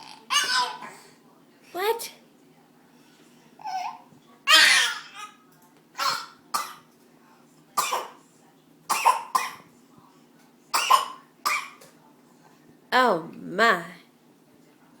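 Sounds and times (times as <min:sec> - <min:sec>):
child fake coughing: 0:06.0 - 0:06.8, 0:08.9 - 0:09.6, 0:10.8 - 0:11.8.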